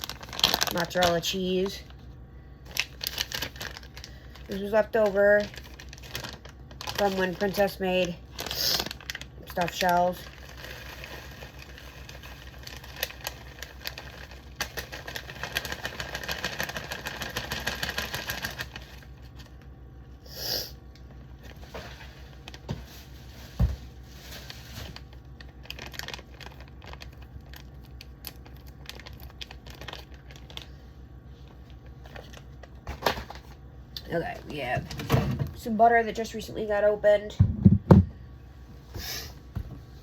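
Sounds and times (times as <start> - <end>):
plastic packaging crinkling: 0.0 - 19.6, 21.3 - 33.6.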